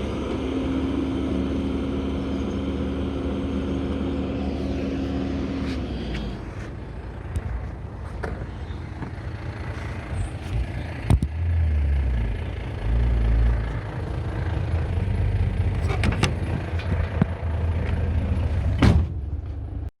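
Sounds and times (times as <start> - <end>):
dump truck engine rumbling: 0.0 - 19.9.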